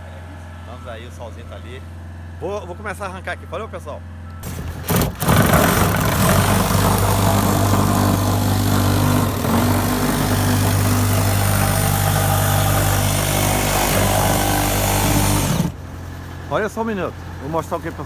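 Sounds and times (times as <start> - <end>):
power saw cutting: 4.4 - 16.2.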